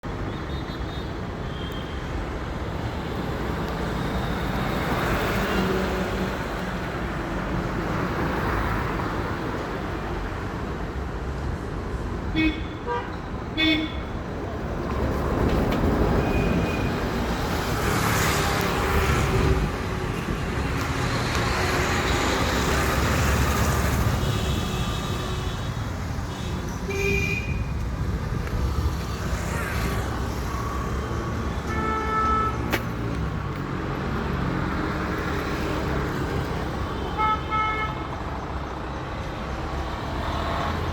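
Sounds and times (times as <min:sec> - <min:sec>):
traffic engine rumble: 0:01.6 - 0:40.9
vehicle horns tooting: 0:12.4 - 0:14.1.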